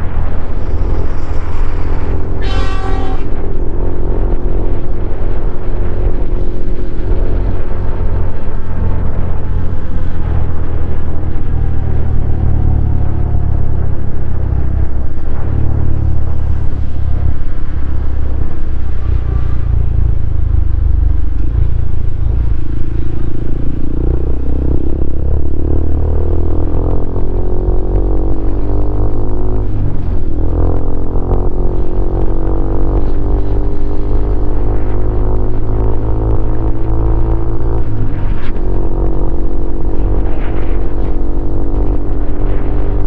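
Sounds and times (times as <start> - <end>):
motorcycle engine running: 0.0 - 43.0.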